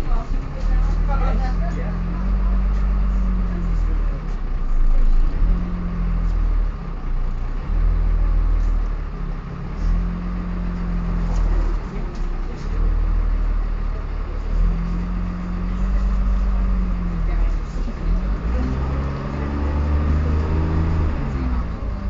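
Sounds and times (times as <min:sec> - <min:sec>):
bus engine running: 0:00.0 - 0:22.0.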